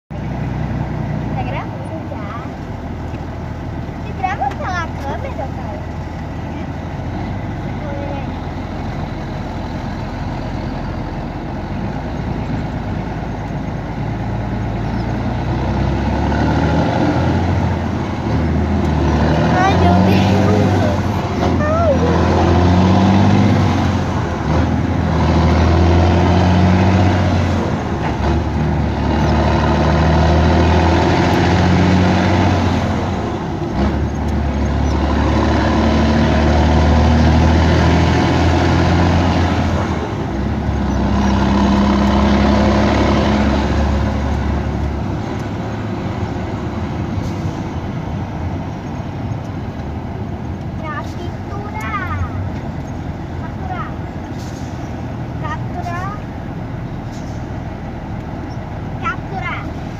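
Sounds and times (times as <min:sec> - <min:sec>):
diesel truck engine droning: 0:00.1 - 0:59.9.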